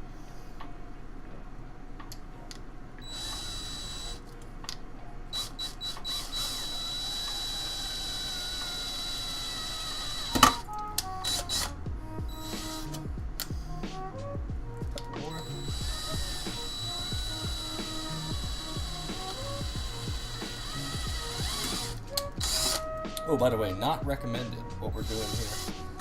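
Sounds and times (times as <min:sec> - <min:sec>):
power drill whining on metal: 0:03.0 - 0:04.2, 0:05.4 - 0:13.0, 0:15.3 - 0:23.0, 0:25.0 - 0:26.0.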